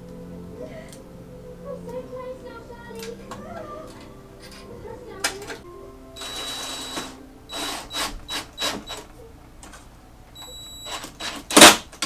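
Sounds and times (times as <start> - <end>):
faint high whine: 0.0 - 11.6
hand tool scraping metal: 6.2 - 9.1.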